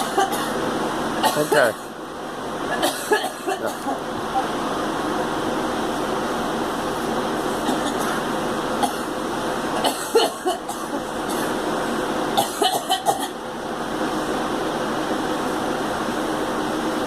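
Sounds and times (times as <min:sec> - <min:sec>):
girl coughing: 0:00.0 - 0:00.6, 0:01.2 - 0:01.8, 0:02.7 - 0:04.0, 0:07.6 - 0:08.2, 0:08.8 - 0:09.1, 0:09.8 - 0:11.6, 0:12.4 - 0:13.4.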